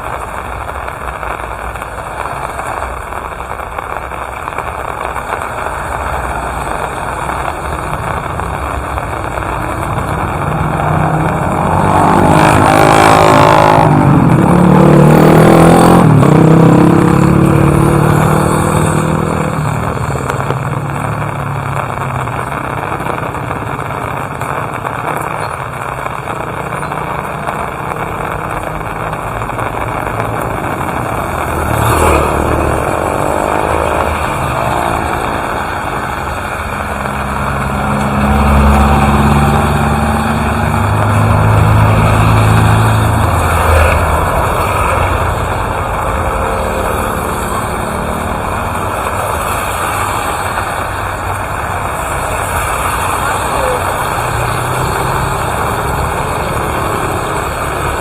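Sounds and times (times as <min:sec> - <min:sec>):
steady rain: 0:00.0 - 0:58.0
vehicle driving past: 0:09.3 - 0:19.5, 0:31.3 - 0:50.9.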